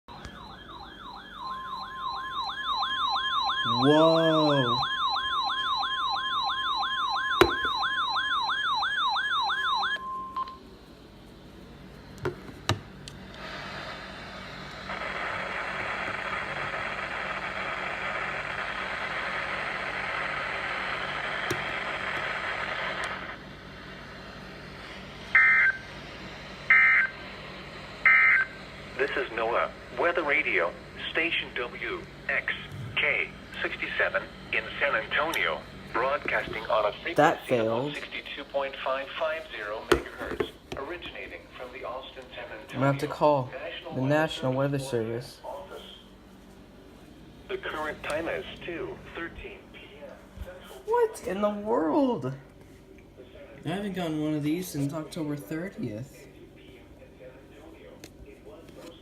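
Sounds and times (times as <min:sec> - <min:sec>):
warbling siren-like wail: 0:00.1 - 0:10.0, 0:25.3 - 0:26.0, 0:26.6 - 0:27.2, 0:28.0 - 0:28.6
steady attention tone: 0:00.1 - 0:10.8
radio hiss: 0:13.3 - 0:24.0, 0:28.4 - 0:44.7, 0:47.4 - 0:50.7.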